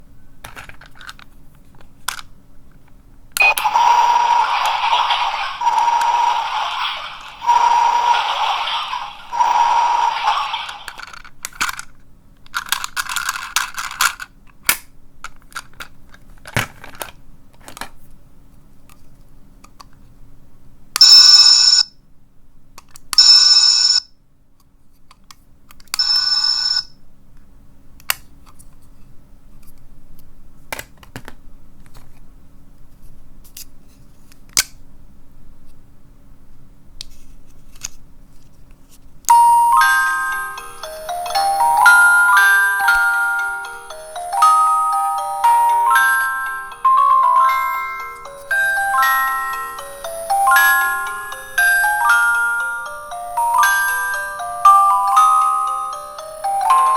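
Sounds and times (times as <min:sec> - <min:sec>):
plastic toys clicking and rattling: 0:00.4 - 0:02.3, 0:03.4 - 0:18.0
high electronic ringing tones: 0:03.4 - 0:10.9, 0:39.3 - 0:56.9.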